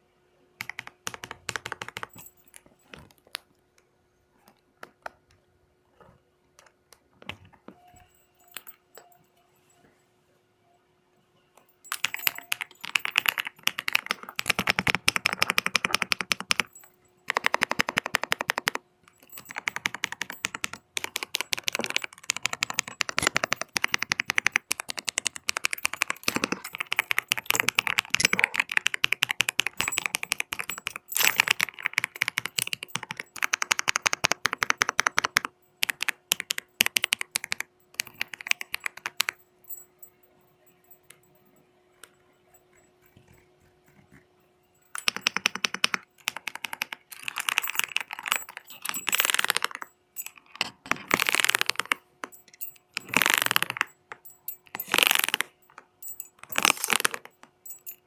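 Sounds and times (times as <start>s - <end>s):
fast typing on mechanical keyboard: 0.6s - 2.4s, 11.9s - 39.4s, 44.9s - 58.0s.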